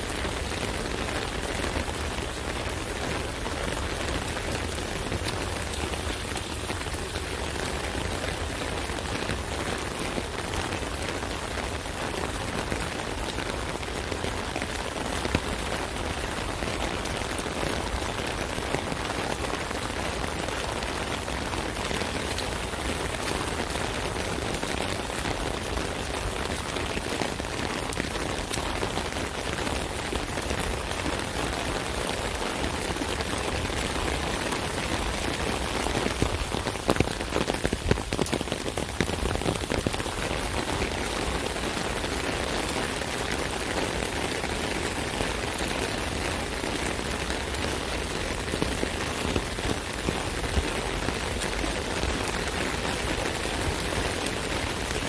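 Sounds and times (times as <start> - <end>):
rain on an umbrella: 0.0 - 55.0.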